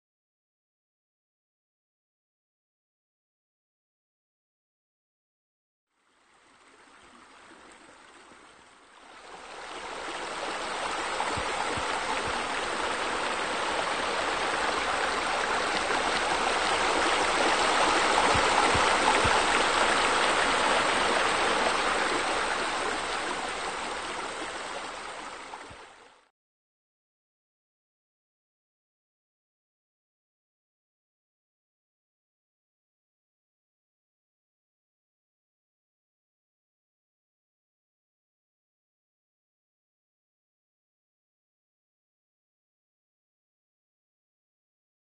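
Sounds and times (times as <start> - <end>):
waterfall rushing: 9.3 - 25.9.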